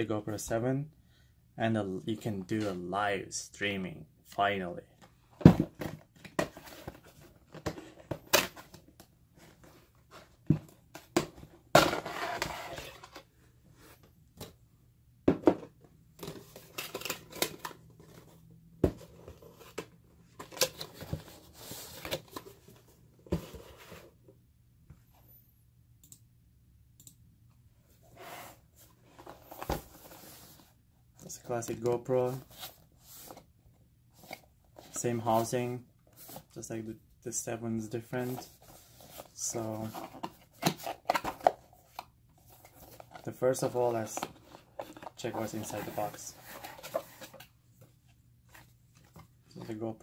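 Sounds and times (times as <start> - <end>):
cardboard and plastic packaging handled: 5.0 - 14.6, 15.4 - 24.2, 28.1 - 36.6, 38.0 - 50.0.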